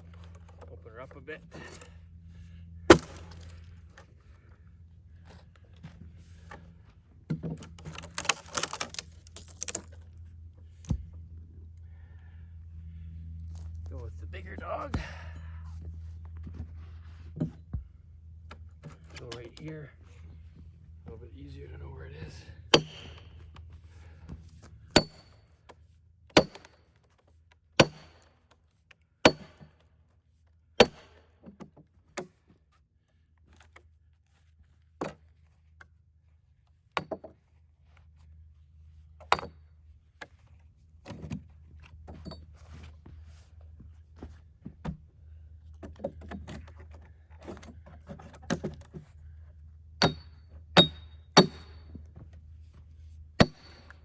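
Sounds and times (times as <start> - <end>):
hammer striking steel wedge: 22.7 - 23.3, 30.8 - 31.2, 50.0 - 51.8, 53.4 - 54.0.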